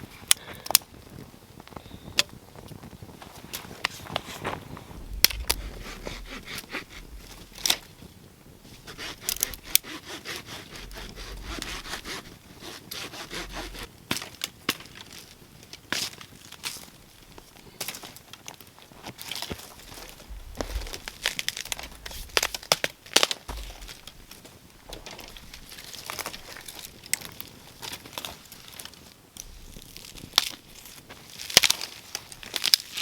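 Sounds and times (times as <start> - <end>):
wood scraping and rubbing: 4.3 - 8.0, 8.6 - 13.9, 19.6 - 27.1
dry wood cracking and snapping: 4.8 - 33.0.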